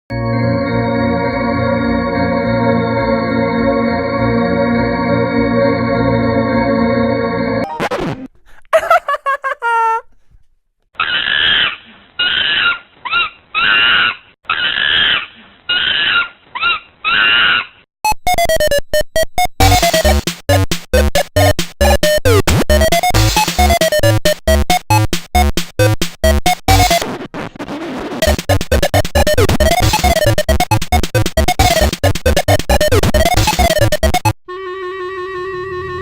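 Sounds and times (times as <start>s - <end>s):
organ chord: 0.1s - 7.6s.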